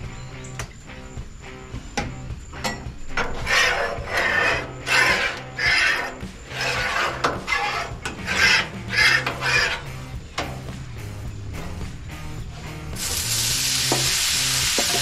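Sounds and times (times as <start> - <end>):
metal spatula scraping griddle: 3.2 - 10.0.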